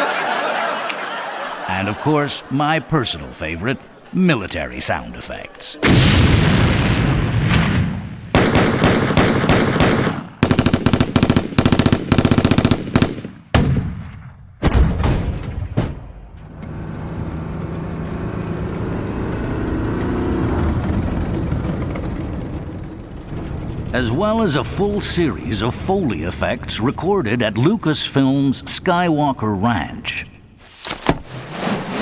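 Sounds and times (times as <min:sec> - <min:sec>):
explosion blast: 0:05.8 - 0:10.5
machine-gun fire: 0:05.8 - 0:16.0
heavy gunshots: 0:05.8 - 0:16.3
heavy vehicle engine running: 0:16.1 - 0:27.1.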